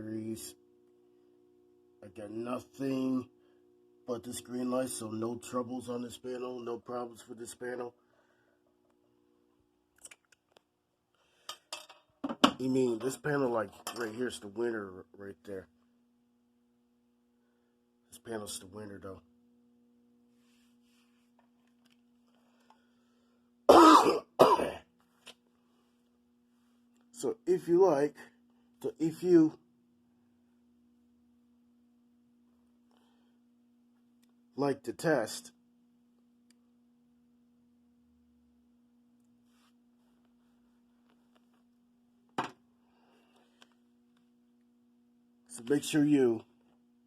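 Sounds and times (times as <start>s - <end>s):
faint low hum: 0.0s - 47.0s
person coughing: 23.7s - 24.9s.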